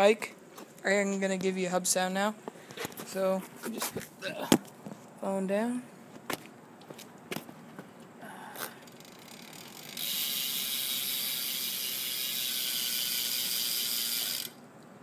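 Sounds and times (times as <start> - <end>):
bike freewheel hub buzzing: 8.7 - 14.6.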